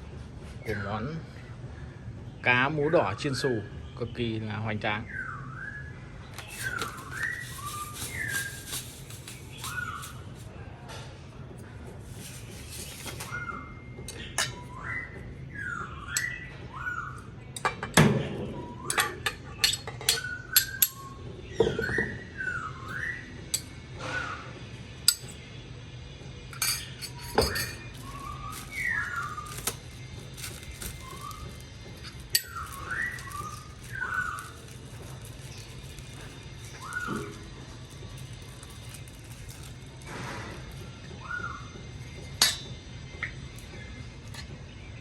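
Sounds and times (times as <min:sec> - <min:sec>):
whistled bird calls: 0:00.6 - 0:10.6, 0:12.1 - 0:17.6, 0:18.2 - 0:25.5, 0:26.6 - 0:42.5
kitchen utensils and dishes clinking: 0:06.4 - 0:10.5, 0:12.0 - 0:13.4, 0:14.1 - 0:14.7, 0:17.6 - 0:21.0, 0:25.1 - 0:25.4, 0:26.5 - 0:40.8, 0:42.4 - 0:43.4.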